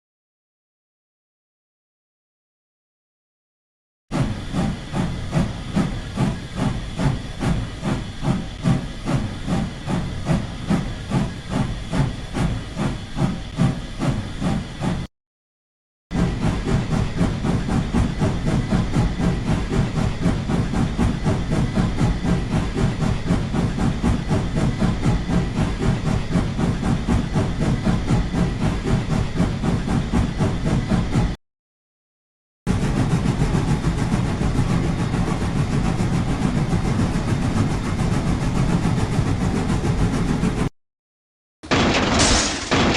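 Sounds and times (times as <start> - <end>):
rhythmic hissing pulses: 4.2 - 15.0.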